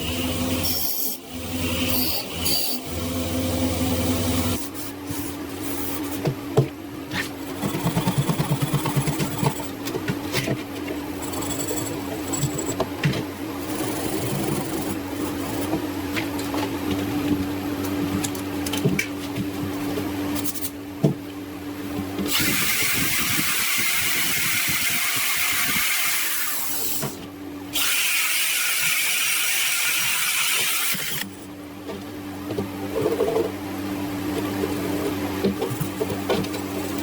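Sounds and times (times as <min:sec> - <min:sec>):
motor humming: 0:00.0 - 0:06.2.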